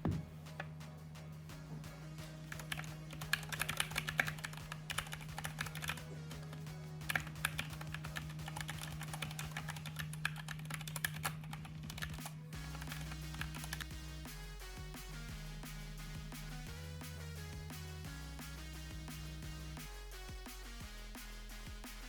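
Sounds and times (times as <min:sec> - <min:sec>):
background music: 0:00.0 - 0:22.0
mechanical keyboard typing: 0:09.6 - 0:12.2.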